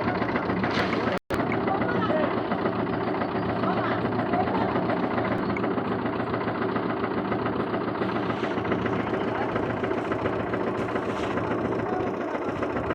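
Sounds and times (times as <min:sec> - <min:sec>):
machine engine running: 0:00.0 - 0:12.9.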